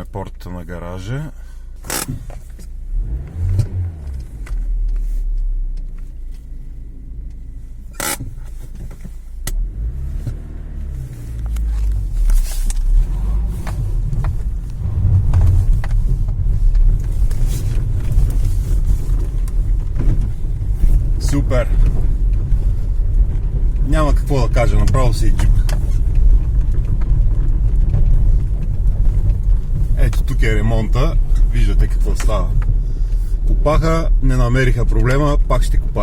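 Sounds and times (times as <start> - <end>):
car engine pulling uphill: 0.0 - 36.0.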